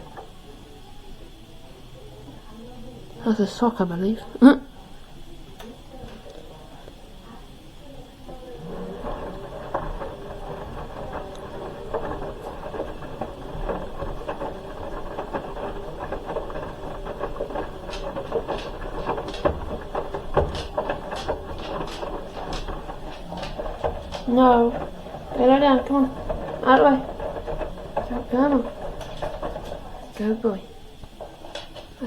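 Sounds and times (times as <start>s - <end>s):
washing machine drum motor whining: 0.0s - 32.0s
knocks: 8.6s - 32.0s.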